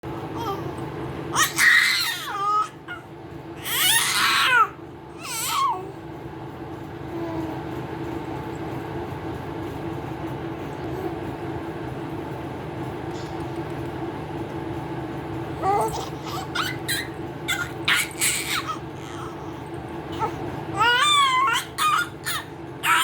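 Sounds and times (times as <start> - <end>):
steady low hum: 0.0 - 23.0
baby crying: 0.4 - 5.9, 15.6 - 23.0.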